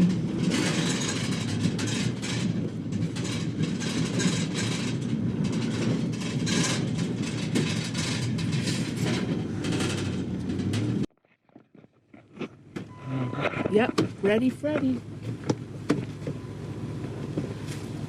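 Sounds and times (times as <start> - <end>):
load rattling: 0.0 - 11.1
minivan road noise: 0.0 - 11.1, 11.7 - 18.0.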